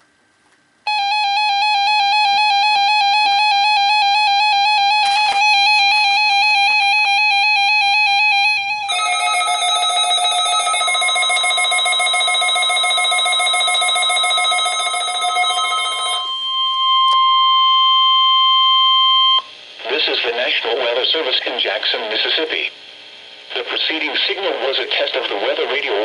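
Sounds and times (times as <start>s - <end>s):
electronic alarm warbling: 0.9s - 18.0s
steady single-pitch alarm tone: 0.9s - 19.6s.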